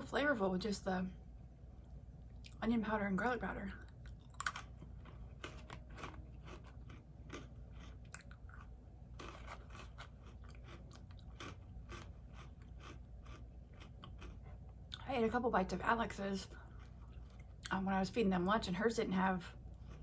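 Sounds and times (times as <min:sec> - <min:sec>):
person chewing food: 0:03.8 - 0:15.0, 0:16.5 - 0:17.7, 0:19.7 - 0:20.0
crisp crunches: 0:04.1 - 0:14.4.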